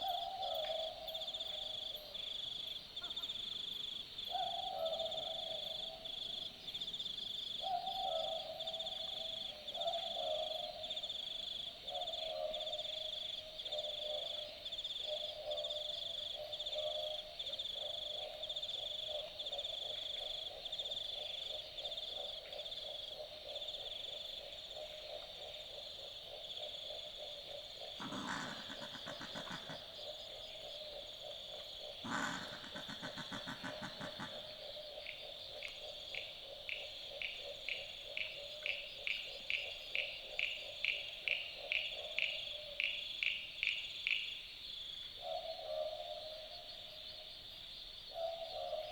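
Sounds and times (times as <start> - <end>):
high insect chorus: 0.0 - 48.9
owl frog-like croaks: 17.6 - 44.3
possum harsh growling calls: 28.0 - 30.0, 32.0 - 34.5.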